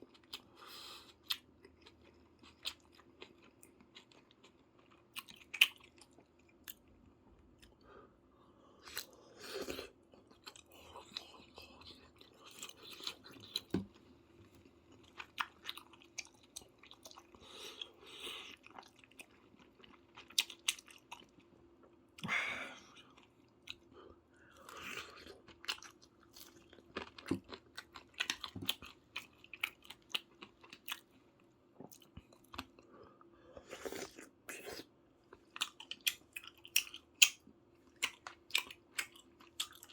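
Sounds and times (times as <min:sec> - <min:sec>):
person chewing crunchy food: 0:00.0 - 0:06.8, 0:08.8 - 0:21.4, 0:24.5 - 0:31.2, 0:33.6 - 0:39.9.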